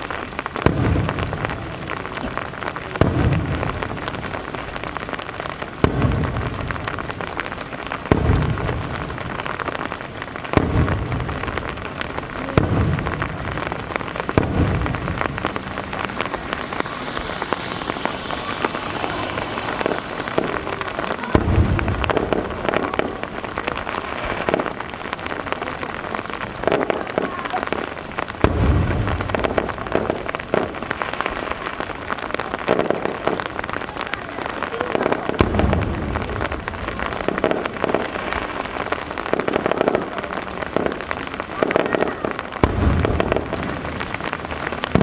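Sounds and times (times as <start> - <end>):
rain hissing: 0.0 - 45.0
firework shells bursting: 0.2 - 33.8, 34.4 - 45.0.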